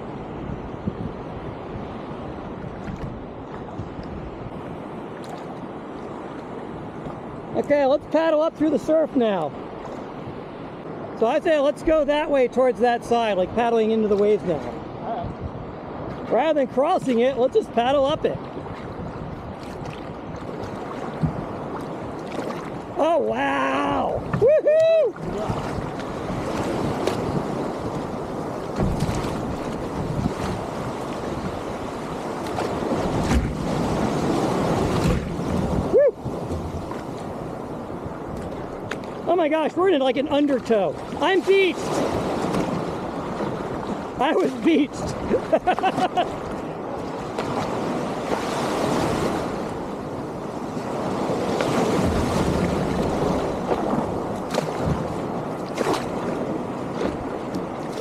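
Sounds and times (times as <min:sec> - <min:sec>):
wind buffeting microphone: 0:00.0 - 0:07.7, 0:13.2 - 0:58.0
small waves washing over grass: 0:00.0 - 0:58.0
water splashes: 0:01.7 - 0:58.0.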